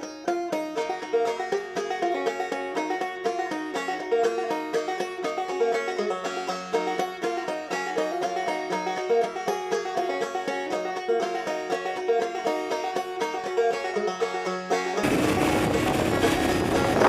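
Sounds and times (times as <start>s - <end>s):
bluegrass banjo music: 0.0s - 17.0s.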